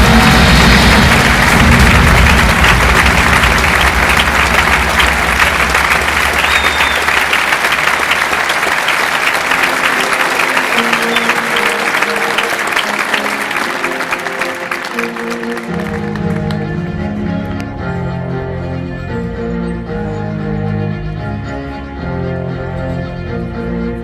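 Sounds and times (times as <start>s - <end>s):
heavy bass-laden music: 0.0s - 7.6s, 15.0s - 24.0s
large audience clapping: 0.0s - 17.7s
light melody: 9.0s - 24.0s.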